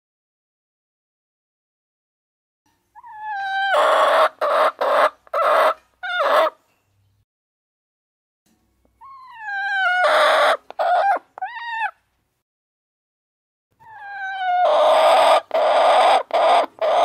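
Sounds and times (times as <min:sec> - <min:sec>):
chicken calling loudly: 0:03.0 - 0:06.6, 0:09.0 - 0:12.0, 0:13.8 - 0:17.0.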